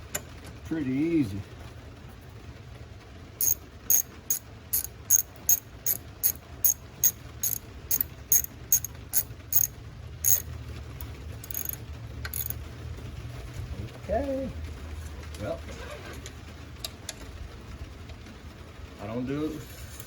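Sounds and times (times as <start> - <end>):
ratchet wrench clicking: 3.4 - 10.5, 11.4 - 12.6.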